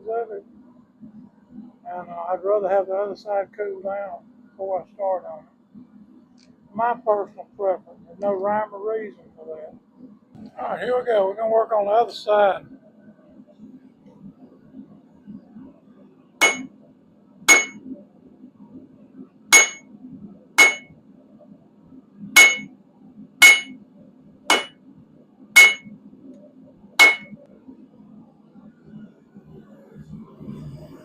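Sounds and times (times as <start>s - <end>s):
hammer striking steel on anvil: 16.4s - 16.7s, 17.5s - 17.8s, 19.5s - 19.8s, 20.6s - 20.9s, 22.4s - 22.7s, 23.4s - 23.8s, 24.5s - 24.8s, 25.6s - 25.9s, 27.0s - 27.4s.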